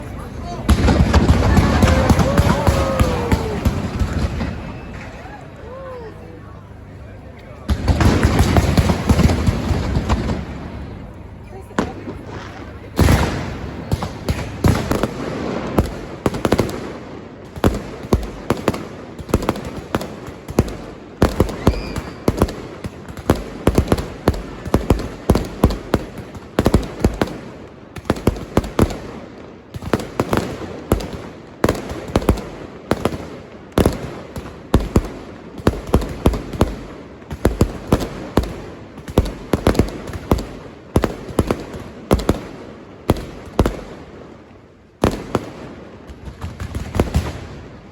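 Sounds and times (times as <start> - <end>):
fireworks crackling: 0.0 - 47.9
firecracker bangs: 0.6 - 5.3, 7.7 - 11.0, 11.8 - 27.4.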